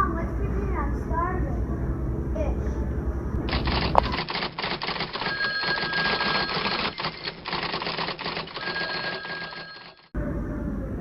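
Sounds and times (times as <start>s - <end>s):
rapid mechanical clicking: 3.5s - 10.1s.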